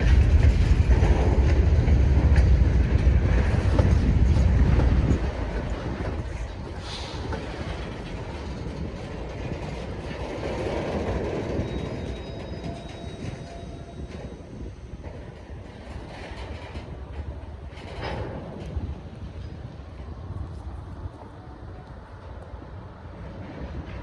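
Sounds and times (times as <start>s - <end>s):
train wheels rumbling and clacking: 0.0s - 24.0s
faint wheel squeal: 11.4s - 15.0s.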